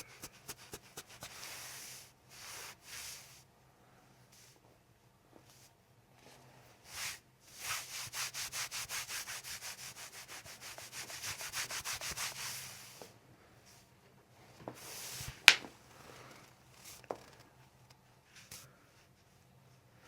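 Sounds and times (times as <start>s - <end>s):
hands rubbing over a body: 0.0s - 3.3s, 7.6s - 13.0s.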